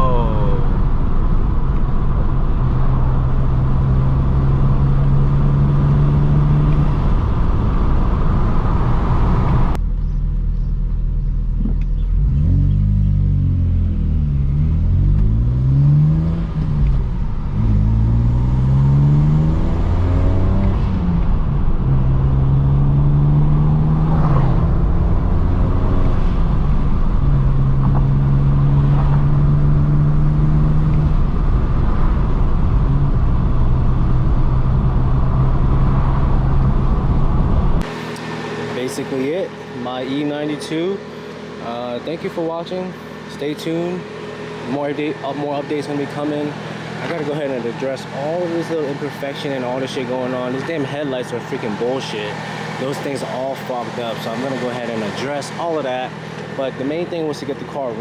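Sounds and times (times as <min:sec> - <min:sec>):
car engine revving: 0:00.0 - 0:58.0
road and wind noise hiss: 0:15.8 - 0:58.0.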